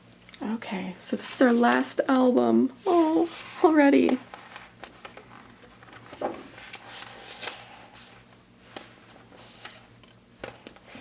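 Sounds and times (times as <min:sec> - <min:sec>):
photo cards being handled: 0:04.0 - 0:11.0.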